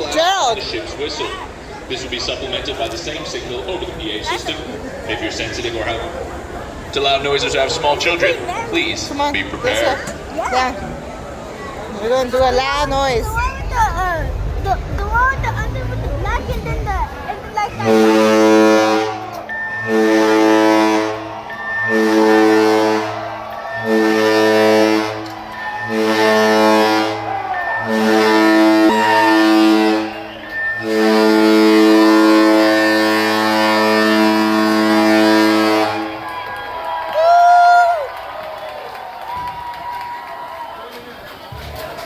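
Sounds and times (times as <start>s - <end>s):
alarm over pa system: 0.0s - 11.2s, 16.8s - 36.5s
ship whistle blasts: 17.2s - 37.2s.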